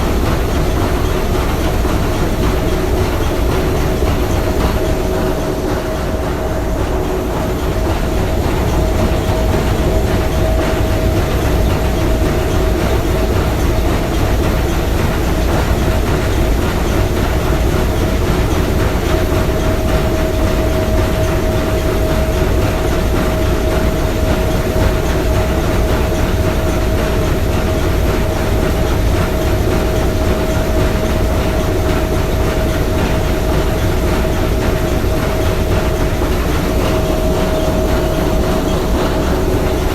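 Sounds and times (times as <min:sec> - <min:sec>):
steady high hum: 0:00.0 - 0:39.9
steam engine clatter and rumble: 0:00.0 - 0:39.9.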